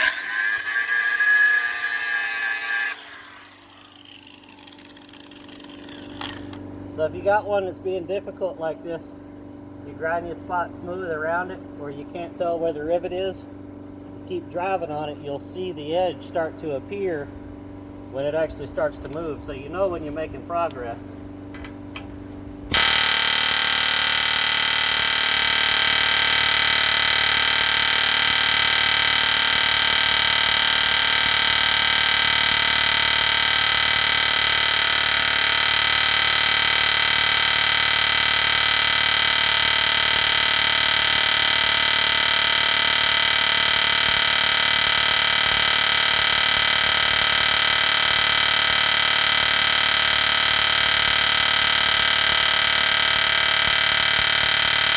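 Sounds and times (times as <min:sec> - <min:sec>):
pneumatic air hammer hammering: 0:00.0 - 0:06.6, 0:22.7 - 0:54.9.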